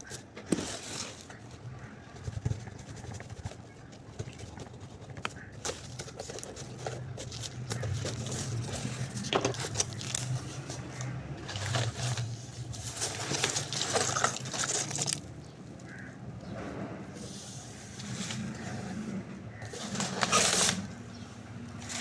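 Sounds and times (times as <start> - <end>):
cardboard box being opened: 4.2 - 10.8, 11.4 - 15.2.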